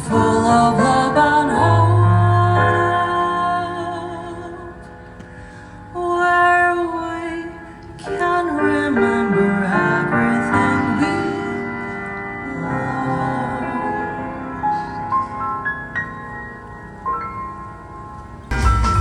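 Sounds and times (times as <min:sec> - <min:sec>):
woman singing jazz: 0:00.0 - 0:05.0, 0:05.9 - 0:14.6.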